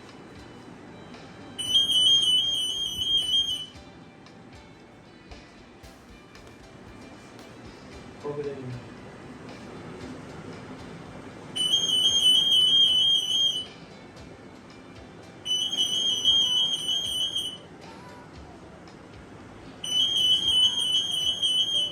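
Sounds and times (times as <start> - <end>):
security gate alarm beeping: 1.5 - 3.8, 11.6 - 13.7, 15.4 - 17.7, 19.8 - 21.9.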